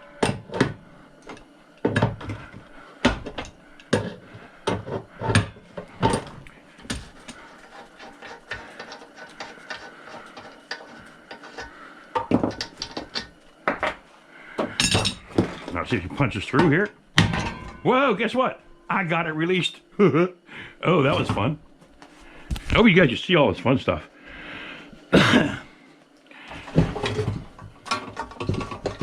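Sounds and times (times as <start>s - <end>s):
metal knocks and clanks: 17.2s - 17.8s.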